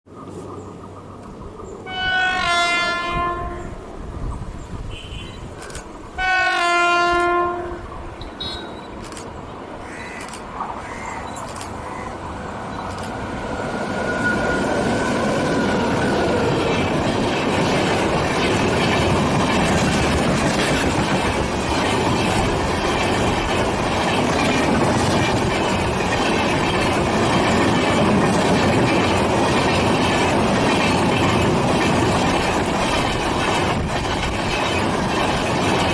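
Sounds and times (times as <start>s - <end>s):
train rumble: 0.1s - 35.9s
locomotive horn blast: 1.8s - 3.8s, 4.9s - 5.5s, 6.2s - 8.8s
train wheels clacking over rail joints: 15.3s - 35.9s.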